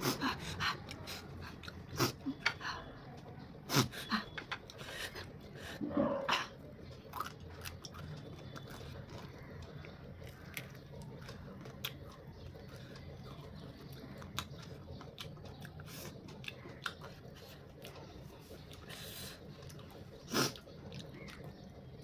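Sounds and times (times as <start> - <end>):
person eating: 0.0 - 21.6
faint clicks and crunches: 6.7 - 22.0.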